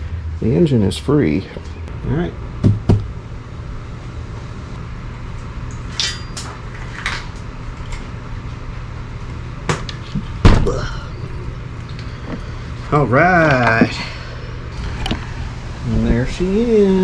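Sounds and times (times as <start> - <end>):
steady low hum: 0.0 - 17.0
heavy thump: 2.6 - 3.1, 10.4 - 11.5.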